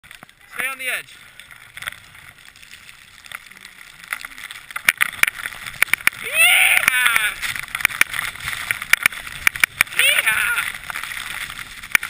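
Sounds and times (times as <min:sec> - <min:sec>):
skis sliding over snow: 0:00.0 - 0:12.0
ski scrapes and clicks: 0:00.1 - 0:12.0
person shouting yeah: 0:06.2 - 0:07.4, 0:09.9 - 0:10.7.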